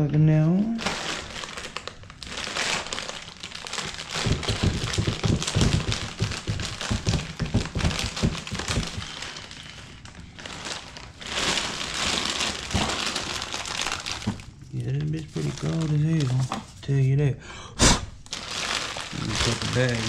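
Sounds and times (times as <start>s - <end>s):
plastic bag crinkling: 0.7s - 16.8s, 18.2s - 20.0s
irregular knocks and clicks: 4.2s - 9.1s.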